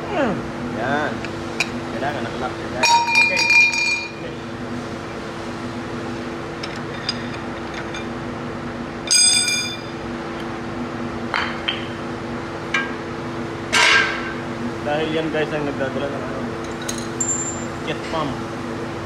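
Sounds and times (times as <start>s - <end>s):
steady low hum: 0.0s - 19.0s
metal tools clinking and knocking: 2.8s - 4.2s, 16.6s - 17.7s
ringing metallic clink: 2.8s - 4.2s, 9.1s - 9.9s, 16.7s - 17.7s.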